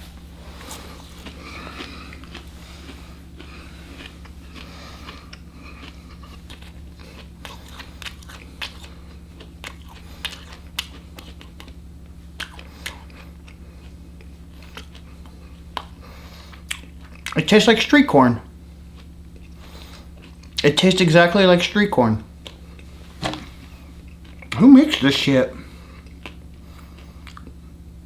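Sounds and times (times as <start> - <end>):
person chewing crunchy food: 0.0 - 17.9, 18.5 - 21.0, 22.3 - 28.0.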